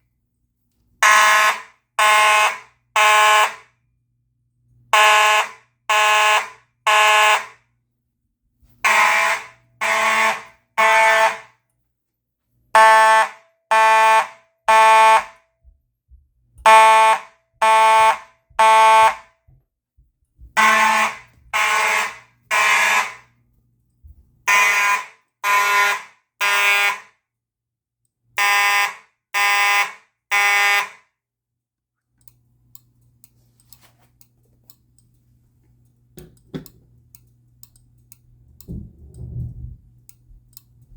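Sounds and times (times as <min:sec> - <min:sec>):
fire alarm horn blasts: 0:01.0 - 0:03.7, 0:04.9 - 0:07.6, 0:08.8 - 0:11.6, 0:12.7 - 0:15.6, 0:16.6 - 0:19.4, 0:20.6 - 0:23.4, 0:24.5 - 0:27.2, 0:28.3 - 0:31.1.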